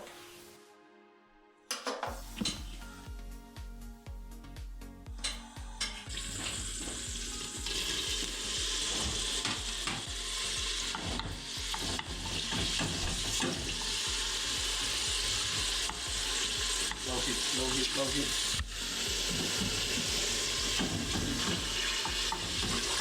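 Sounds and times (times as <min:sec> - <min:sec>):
meat sizzling in a pan: 0:05.4 - 0:23.0.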